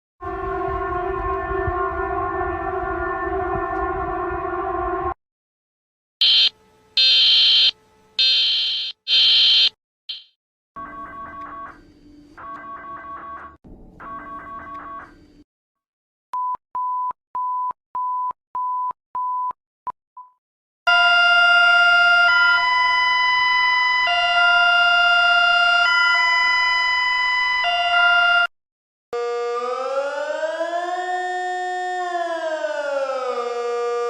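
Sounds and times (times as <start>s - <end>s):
rising siren: 0.2s - 5.2s, 20.9s - 28.5s, 29.2s - 34.0s
harsh chord of alarm tones: 6.2s - 15.4s.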